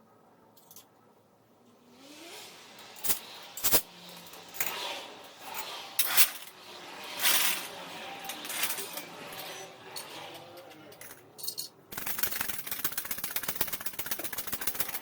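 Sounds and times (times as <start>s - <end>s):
tool rubbing and scraping: 1.7s - 12.7s.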